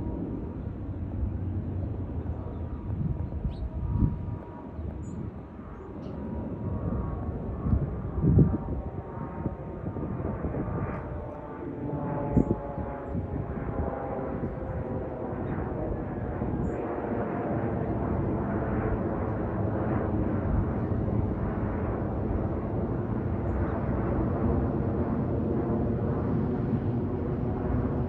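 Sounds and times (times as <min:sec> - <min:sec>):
jet airliner flying over: 0:00.0 - 0:28.0.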